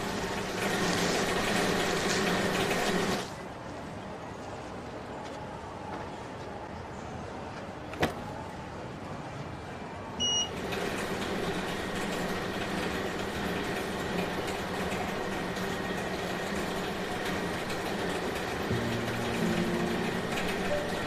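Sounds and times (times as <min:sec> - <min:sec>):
short electronic beep: 0:10.2 - 0:10.5
machine motor humming: 0:16.8 - 0:21.0.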